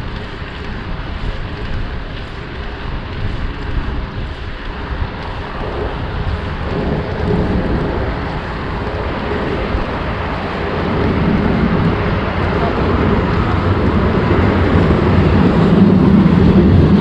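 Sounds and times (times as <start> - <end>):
bike tyres rolling on dirt: 0.0 - 17.0
wind rushing over microphone: 0.0 - 17.0.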